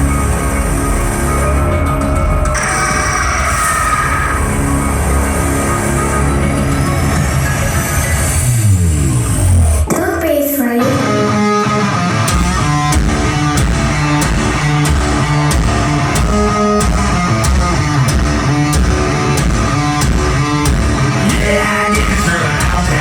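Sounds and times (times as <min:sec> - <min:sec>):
electric guitar and bass riff: 0:00.0 - 0:23.0
steady drum beat: 0:12.3 - 0:23.0.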